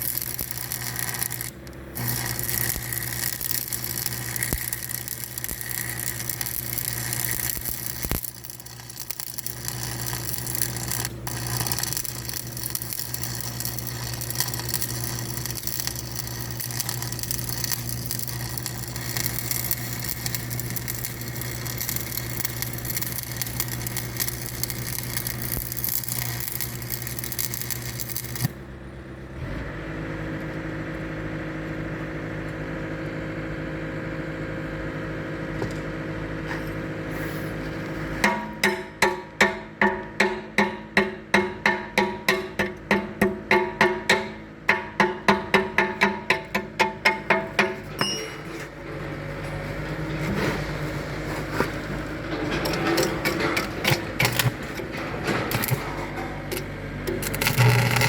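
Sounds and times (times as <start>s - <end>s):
loud mechanical rattling: 0.0s - 28.5s, 52.1s - 58.0s
heavy machine engine running: 47.8s - 58.0s.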